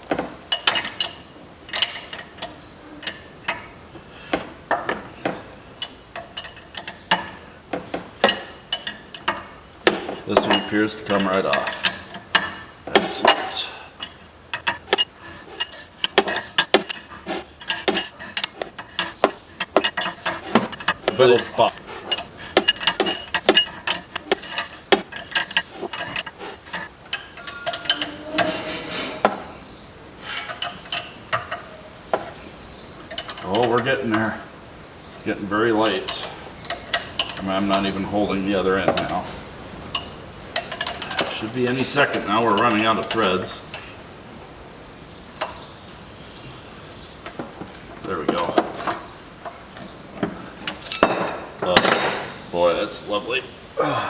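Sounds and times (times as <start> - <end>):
metal scrape: 5.9 - 31.2.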